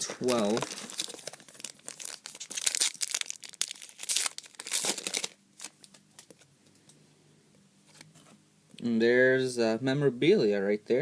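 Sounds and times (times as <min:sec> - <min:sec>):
wrapper crinkling: 0:00.0 - 0:06.4.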